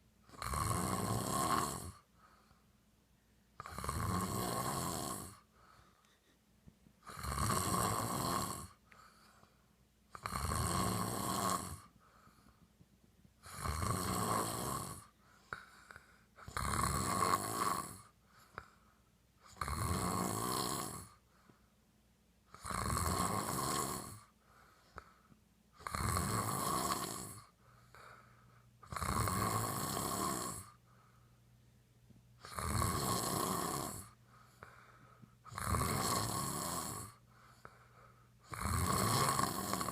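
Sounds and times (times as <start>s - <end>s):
man snoring loudly: 0.3s - 2.1s, 3.6s - 5.5s, 7.0s - 8.8s, 10.1s - 11.9s, 13.4s - 15.1s, 16.4s - 18.1s, 19.4s - 21.2s, 22.5s - 24.3s, 25.8s - 27.5s, 28.8s - 30.8s, 32.4s - 34.2s, 35.5s - 37.2s, 38.4s - 39.9s.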